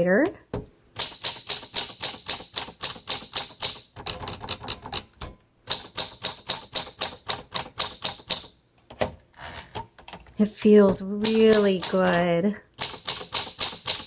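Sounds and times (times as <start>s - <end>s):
manual typewriter typing: 1.0s - 8.5s, 11.2s - 14.0s.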